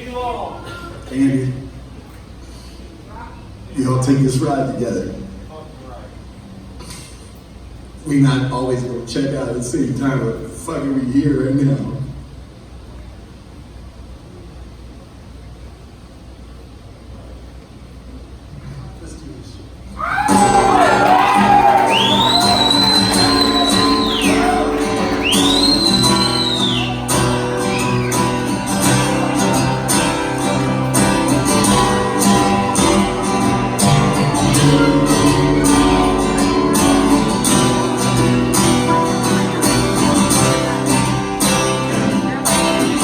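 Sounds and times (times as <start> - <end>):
guitar chords: 20.2 - 43.0.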